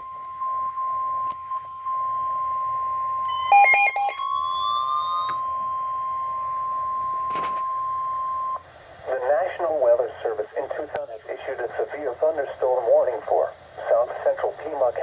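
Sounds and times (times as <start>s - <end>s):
steady single-tone warning alarm: 0.0s - 8.6s.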